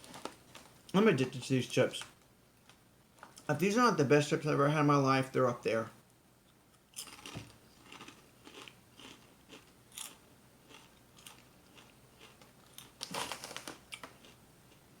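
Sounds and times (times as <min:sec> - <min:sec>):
person chewing crunchy chips: 0:06.9 - 0:14.9.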